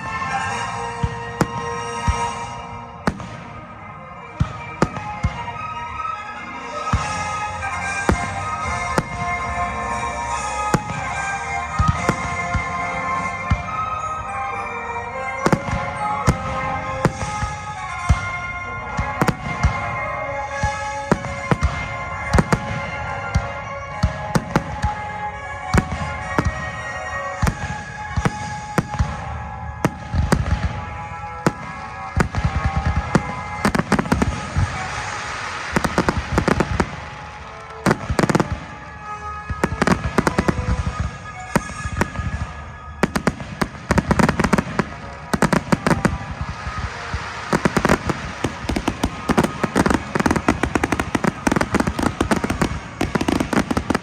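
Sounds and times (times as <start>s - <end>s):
fireworks crackling: 0.0s - 54.0s
music playing: 0.0s - 54.0s
firework shells bursting: 15.3s - 23.0s, 24.2s - 54.0s.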